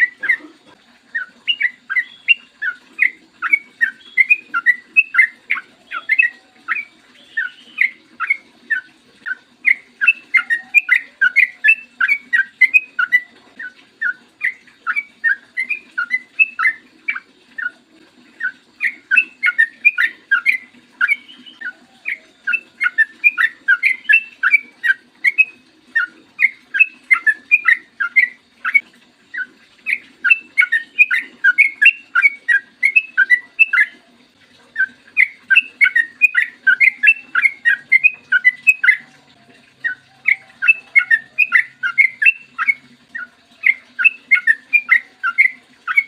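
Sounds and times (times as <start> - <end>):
bulbul singing bubbly notes: 0.0 - 46.0.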